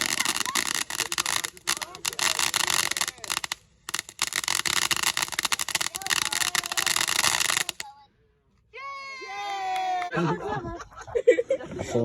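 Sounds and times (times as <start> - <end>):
fireworks crackling: 0.0 - 7.9.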